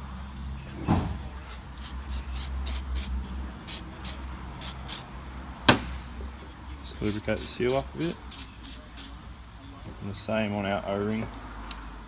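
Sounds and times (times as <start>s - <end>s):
aerosol can spraying: 1.8s - 5.0s, 7.0s - 9.2s.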